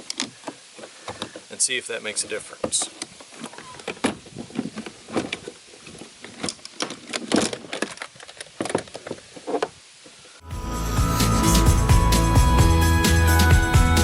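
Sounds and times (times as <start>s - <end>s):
music: 10.4s - 14.0s.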